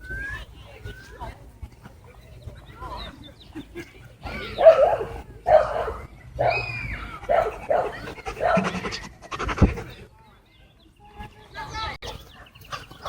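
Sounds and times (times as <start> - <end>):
dog barking: 4.6 - 6.6.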